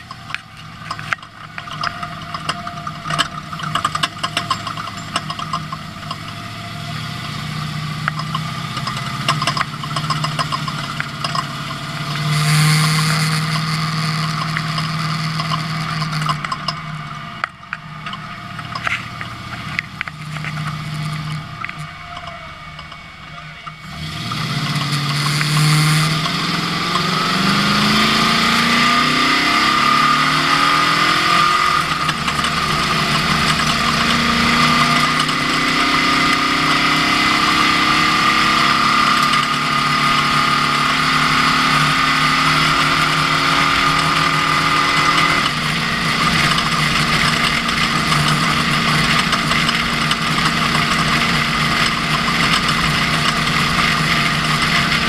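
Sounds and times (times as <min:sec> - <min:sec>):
high engine whine: 0:00.0 - 0:55.0
truck engine accelerating: 0:00.0 - 0:55.0.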